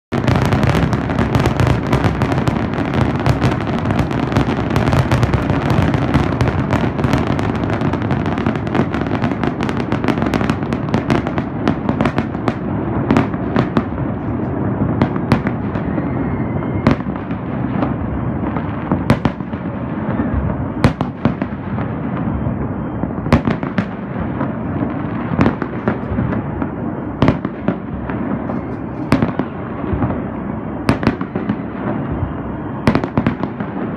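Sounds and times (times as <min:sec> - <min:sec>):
fireworks crackling: 0:00.1 - 0:33.9.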